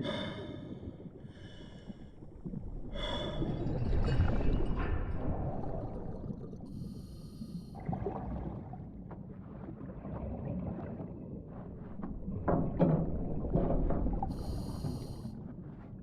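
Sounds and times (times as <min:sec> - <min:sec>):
scuba breathing bubbles: 0:00.0 - 0:08.7, 0:14.2 - 0:15.3
low underwater rumble: 0:00.0 - 0:16.0.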